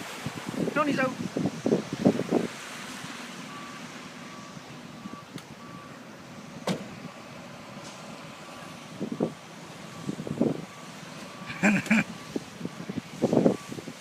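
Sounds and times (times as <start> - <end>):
heavy rain hissing: 6.0 - 14.0.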